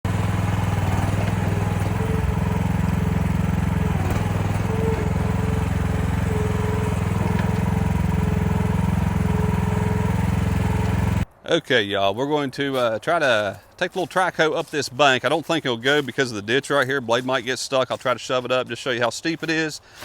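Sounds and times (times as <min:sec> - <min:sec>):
small excavator engine running: 0:00.0 - 0:11.3.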